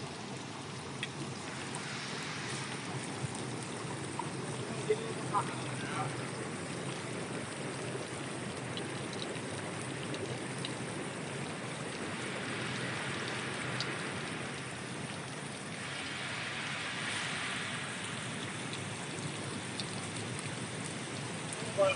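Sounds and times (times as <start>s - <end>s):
low machine hum: 0.0s - 16.9s
water churning and bubbling: 0.0s - 21.9s.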